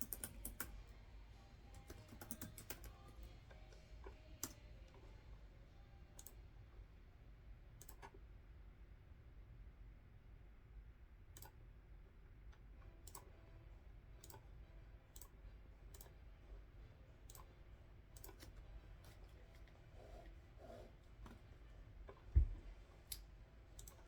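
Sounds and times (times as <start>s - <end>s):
computer mouse clicks: 0.0s - 0.8s, 1.8s - 3.2s, 6.2s - 6.4s, 7.8s - 8.2s, 11.4s - 11.6s, 13.0s - 13.3s, 14.2s - 14.4s, 15.1s - 16.2s, 17.3s - 17.5s, 18.2s - 21.4s, 23.1s - 24.0s.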